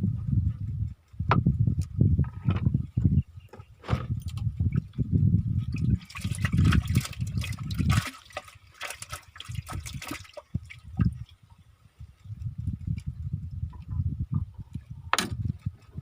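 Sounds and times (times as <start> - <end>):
low rumbling handling noise: 0.0 - 8.0, 12.0 - 16.0
water splashing and trickling: 3.9 - 16.0.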